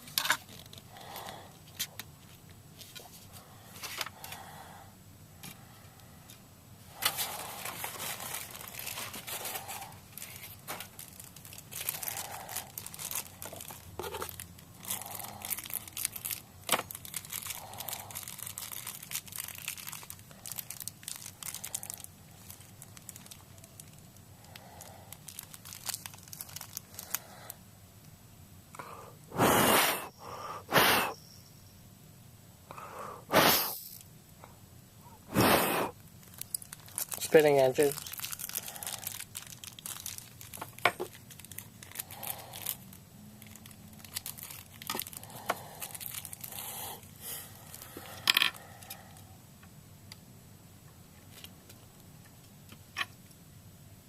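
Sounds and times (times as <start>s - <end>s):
plastic tearing: 7.0s - 24.6s, 25.2s - 27.2s, 36.2s - 46.7s
plastic packaging crinkling: 7.0s - 27.3s, 36.1s - 49.2s.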